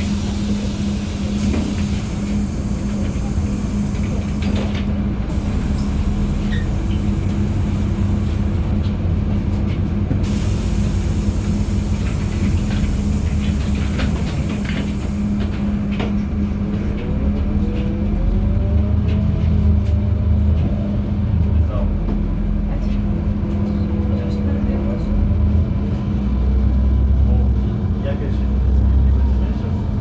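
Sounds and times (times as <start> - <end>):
bus engine drone: 0.0 - 30.0
road rumble: 0.0 - 30.0.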